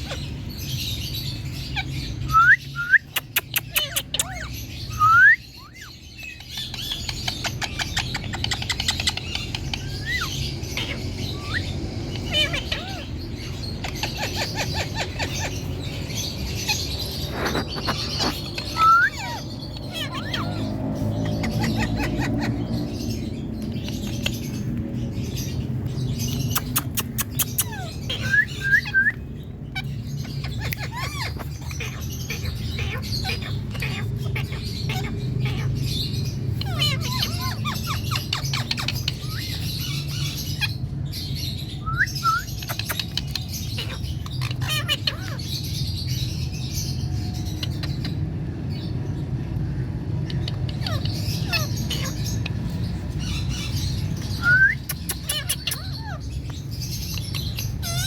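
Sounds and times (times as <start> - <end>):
parrot chirping and squawking: 0.0 - 58.0
sharp clicks: 26.3 - 27.7.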